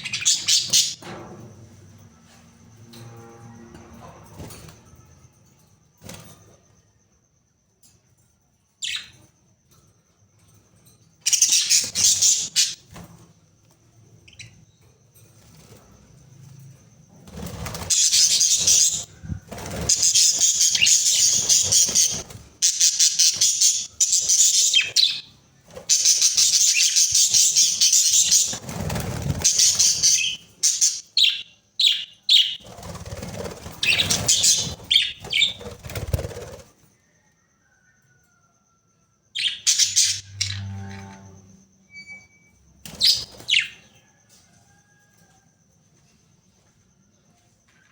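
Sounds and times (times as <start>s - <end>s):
budgerigars warbling and chattering: 17.9s - 19.1s, 19.7s - 25.2s.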